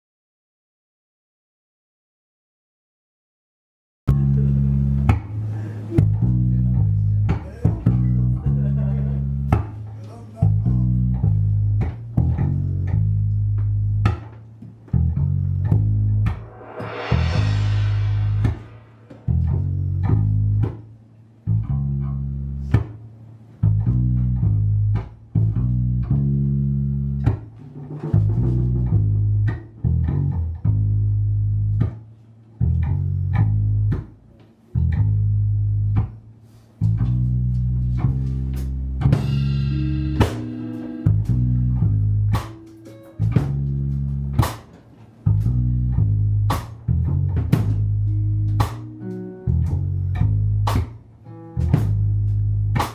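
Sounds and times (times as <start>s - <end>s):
band music: 4.1s - 9.6s, 15.6s - 19.7s, 36.9s - 44.7s, 47.5s - 52.9s
loud bass guitar: 4.1s - 52.9s.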